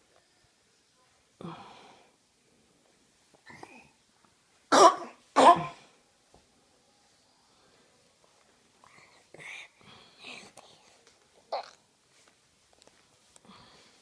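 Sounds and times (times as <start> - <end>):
faint breathy sound: 1.0 - 2.6, 8.8 - 11.0, 13.3 - 14.0
loud coughs: 4.7 - 5.8.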